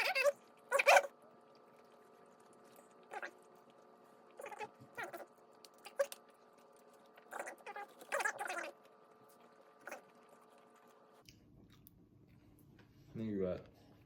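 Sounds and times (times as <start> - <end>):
chewing food: 0.0 - 12.4
faint steady hum: 0.0 - 14.0.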